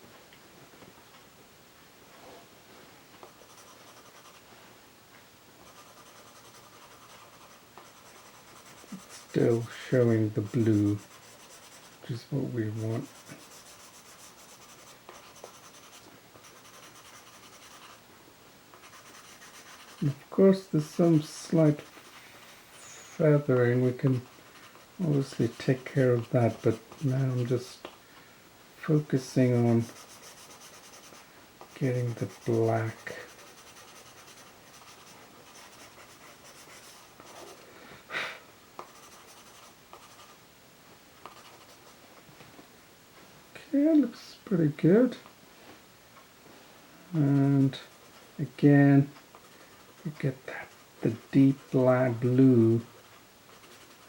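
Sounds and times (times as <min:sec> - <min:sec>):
pencil scratching on paper: 0:03.3 - 0:04.5, 0:05.7 - 0:18.0, 0:18.8 - 0:20.2, 0:20.8 - 0:27.6, 0:29.2 - 0:37.6, 0:38.8 - 0:40.4, 0:41.2 - 0:42.0, 0:47.6 - 0:54.0
pencil rasp: 0:03.4 - 0:04.4, 0:05.7 - 0:18.0, 0:18.8 - 0:20.2, 0:23.7 - 0:27.5, 0:29.3 - 0:37.6, 0:38.8 - 0:40.3, 0:41.3 - 0:42.0, 0:47.7 - 0:48.4, 0:49.1 - 0:54.0.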